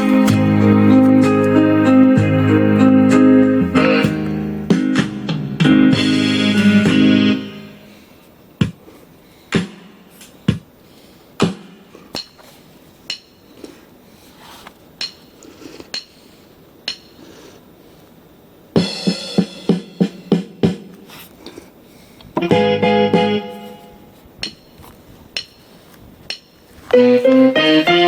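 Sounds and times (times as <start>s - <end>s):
electronic keyboard notes: 0.0s - 7.9s, 22.4s - 24.2s, 26.9s - 28.0s
sustained keyboard chord: 0.0s - 7.9s, 22.4s - 24.1s, 26.9s - 28.0s.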